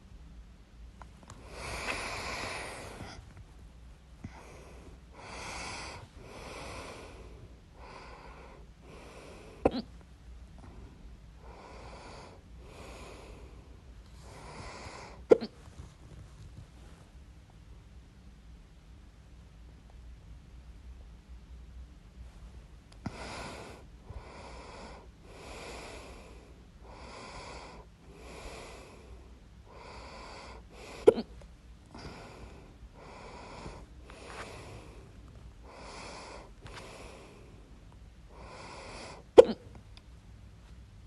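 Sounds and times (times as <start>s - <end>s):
person breathing in and out: 1.3s - 3.3s, 4.2s - 9.8s, 10.6s - 15.3s, 23.0s - 31.3s, 31.9s - 39.4s.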